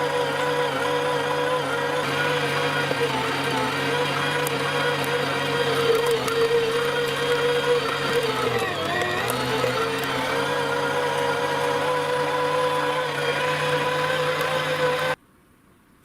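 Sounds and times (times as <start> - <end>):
meat grinder motor running: 0.0 - 15.2.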